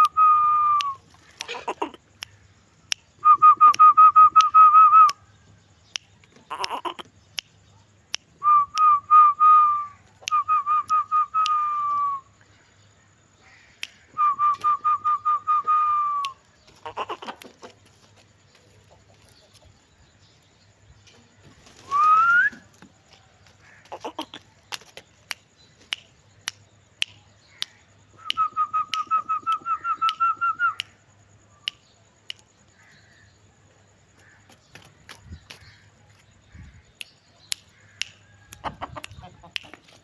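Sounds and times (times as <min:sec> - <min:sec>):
short repeated whistled notes: 0:00.0 - 0:01.1, 0:08.4 - 0:12.3, 0:13.9 - 0:16.4, 0:21.7 - 0:22.7
rising whistled note: 0:21.8 - 0:22.7.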